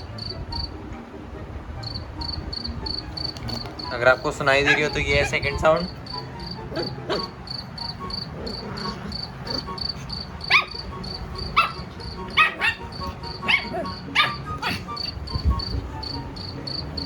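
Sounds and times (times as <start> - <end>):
recorded cricket chirping: 0.0 - 17.0
dog barking: 4.6 - 5.6, 6.6 - 15.2.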